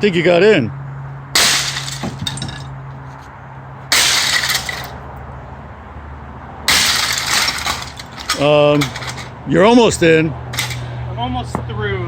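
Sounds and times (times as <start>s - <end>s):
debris rattling: 1.4s - 2.8s, 3.9s - 5.0s, 6.7s - 9.4s, 10.5s - 10.9s.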